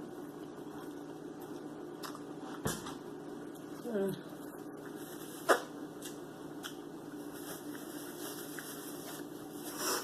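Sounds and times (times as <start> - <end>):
faint steady hum: 0.0 - 10.0
person chewing: 0.4 - 2.6.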